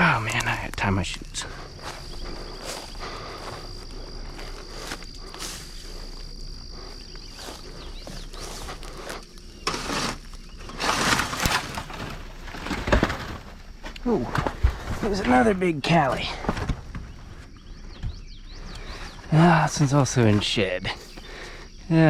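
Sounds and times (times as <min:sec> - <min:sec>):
high-pitched insect trill: 0:00.0 - 0:12.6, 0:17.4 - 0:22.0
rustling and shuffling: 0:00.0 - 0:21.5.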